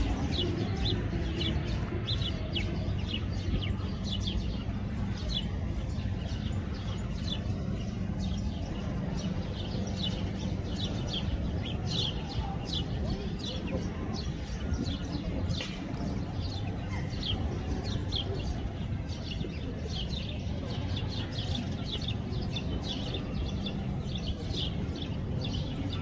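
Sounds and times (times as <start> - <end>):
sparrows chirping: 0.0 - 26.0
steady low rumble: 0.0 - 26.0.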